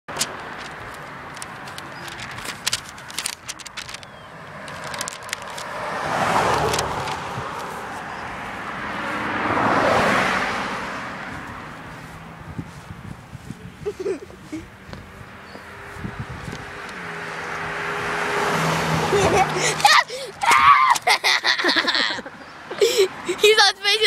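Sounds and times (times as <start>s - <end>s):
clicks and crackles: 0.1s - 5.8s, 6.6s - 7.2s
vehicles passing by: 0.1s - 24.0s.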